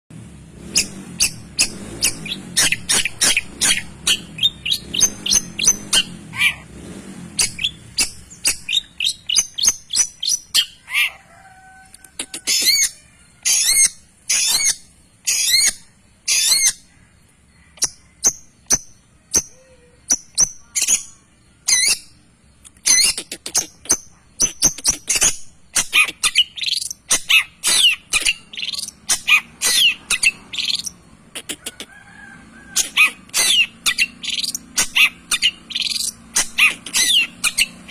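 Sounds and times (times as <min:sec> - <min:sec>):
bird singing sharp notes: 0:00.7 - 0:06.7.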